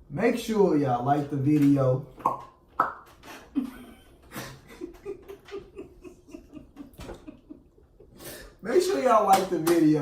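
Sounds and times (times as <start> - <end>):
stifled chuckling: 3.3 - 8.5.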